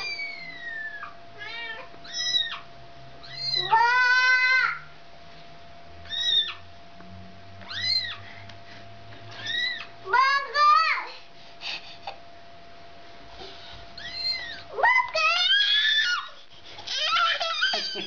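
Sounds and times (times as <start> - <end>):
cat meowing: 0.0 - 4.7, 6.1 - 6.6, 7.6 - 8.2, 9.4 - 9.9, 14.0 - 14.6.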